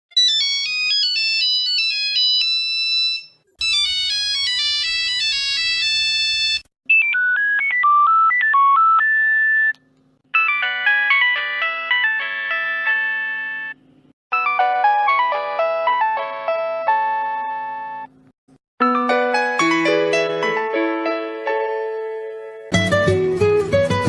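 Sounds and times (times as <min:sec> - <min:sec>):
mobile phone ringtones: 0:00.2 - 0:09.7, 0:10.4 - 0:13.8.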